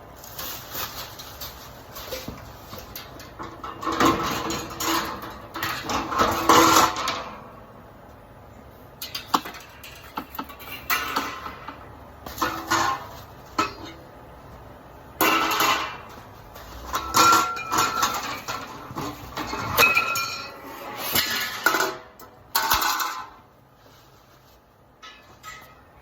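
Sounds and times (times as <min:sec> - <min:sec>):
metal parts clanking: 0:00.4 - 0:07.4, 0:15.2 - 0:23.4, 0:25.0 - 0:26.0.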